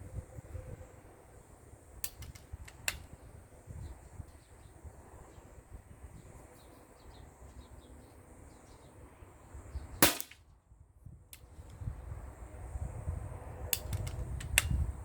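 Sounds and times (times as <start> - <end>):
wind on microphone: 0.0 - 1.2, 1.9 - 6.5, 10.7 - 15.0
air rifle shot: 10.0 - 10.4.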